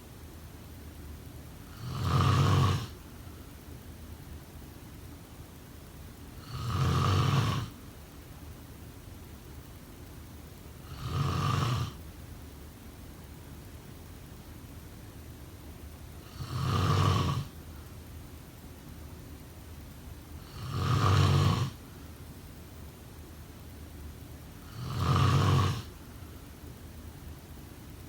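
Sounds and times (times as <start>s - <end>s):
faint steady hiss: 0.0s - 28.0s
person snoring: 1.7s - 3.0s, 6.4s - 7.7s, 10.8s - 12.0s, 16.2s - 17.5s, 20.4s - 21.8s, 24.6s - 25.9s.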